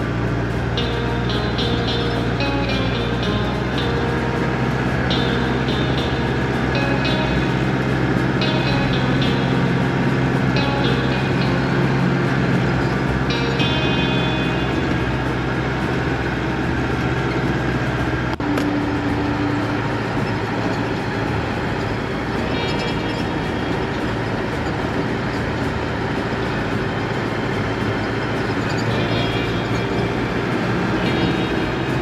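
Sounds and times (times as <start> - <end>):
vehicle engine hum: 0.0 - 32.0.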